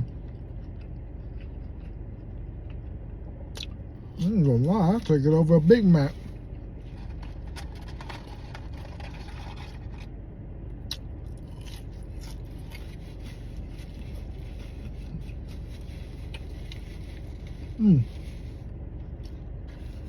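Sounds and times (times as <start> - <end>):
chewing: 0.0 - 5.1, 10.9 - 20.0
low hum: 0.0 - 20.0
burger wrapper rustling: 4.8 - 10.1, 11.2 - 20.0.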